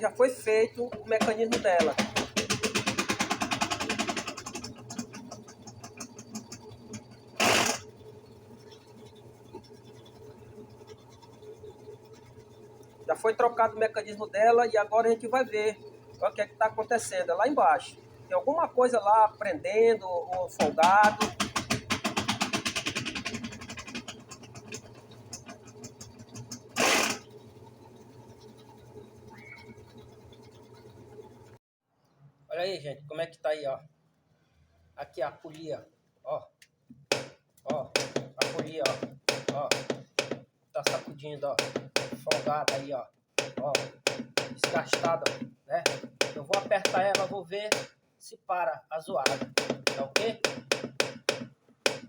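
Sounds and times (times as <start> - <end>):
washing machine clattering: 0.2 - 8.0, 18.8 - 27.4, 37.1 - 48.0.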